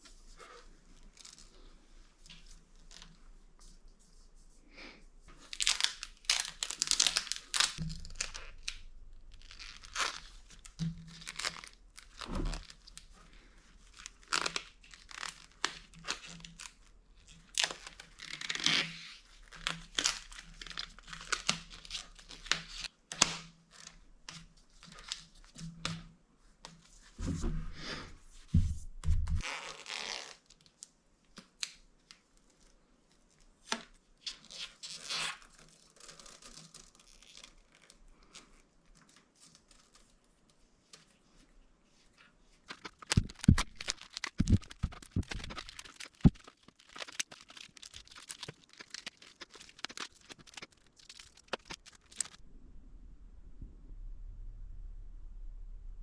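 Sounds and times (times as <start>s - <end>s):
tape crinkling: 5.3s - 25.8s, 29.3s - 41.1s, 42.6s - 52.4s
tape tearing and peeling: 5.4s - 13.1s, 14.0s - 23.9s, 29.4s - 30.6s, 33.7s - 37.9s, 42.7s - 52.4s.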